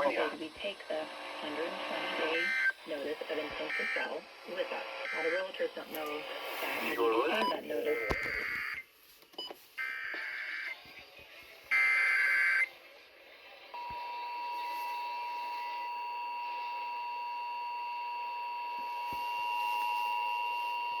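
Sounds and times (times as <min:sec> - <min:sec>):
steady warning alarm tone: 0:03.6 - 0:05.6, 0:11.7 - 0:12.7, 0:13.8 - 0:21.0.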